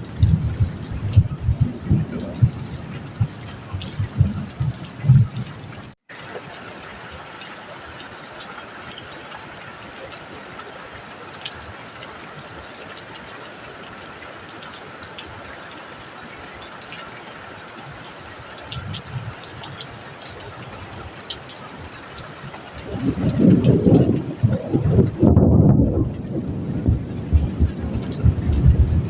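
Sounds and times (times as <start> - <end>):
rain on a metal roof: 0.0 - 29.0
low rumble: 23.0 - 29.0.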